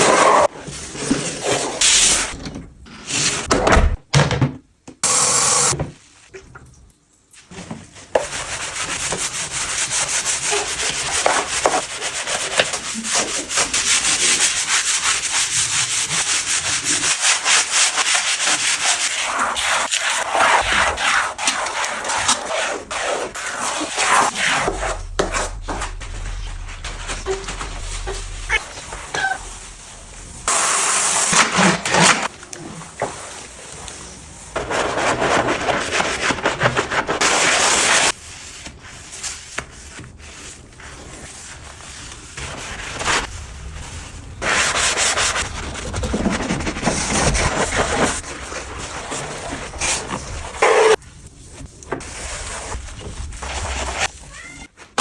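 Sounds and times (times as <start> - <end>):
scrubbing strokes: 8.3 - 30.8.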